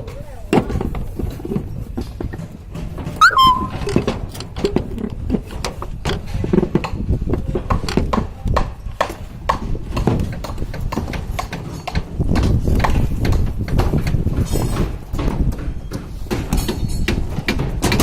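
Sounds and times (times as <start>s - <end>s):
hollow knocking and clattering: 9.0s - 18.0s.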